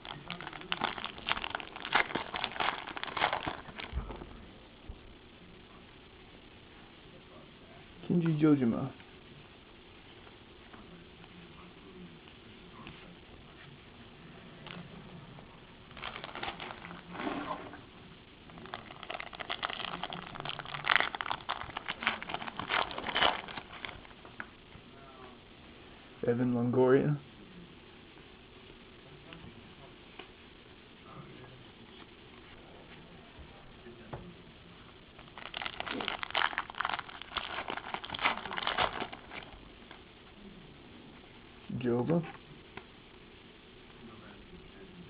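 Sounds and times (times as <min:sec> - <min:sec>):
cards rustling and crinkling: 0:00.0 - 0:03.9, 0:16.0 - 0:17.7, 0:18.5 - 0:24.2, 0:35.2 - 0:40.0.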